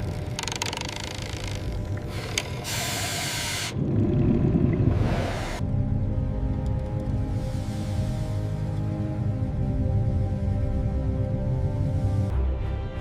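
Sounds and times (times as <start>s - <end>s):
low rumble: 3.8s - 12.3s.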